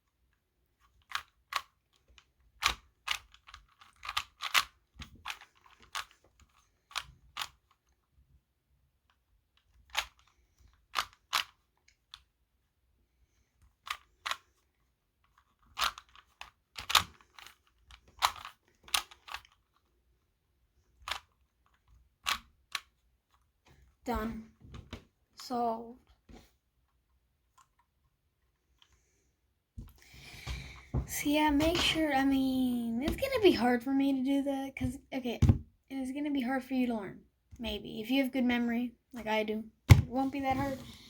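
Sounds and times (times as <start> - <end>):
puzzle cube clicking as turned: 0.8 - 8.0, 9.1 - 12.3, 13.7 - 14.6, 15.2 - 19.9, 21.0 - 23.0.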